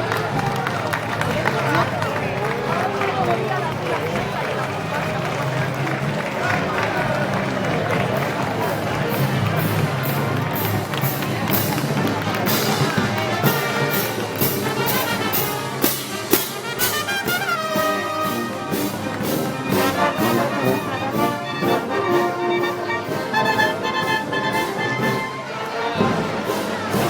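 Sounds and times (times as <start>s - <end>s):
brass band playing: 0.0s - 27.0s
trumpets and trombones: 1.1s - 27.0s
steady percussion beat: 8.0s - 27.0s.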